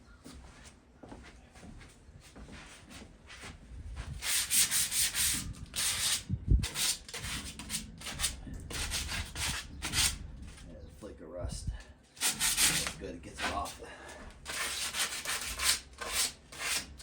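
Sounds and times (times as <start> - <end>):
sandpaper scrubbing metal: 4.2 - 10.2, 12.2 - 13.7, 14.4 - 17.0.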